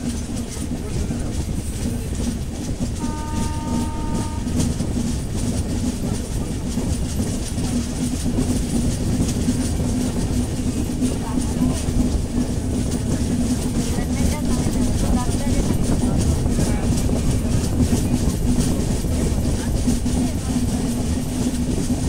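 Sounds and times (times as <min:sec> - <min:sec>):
train rumbling and clattering on rails: 0:00.0 - 0:22.0
train horn: 0:03.0 - 0:04.9.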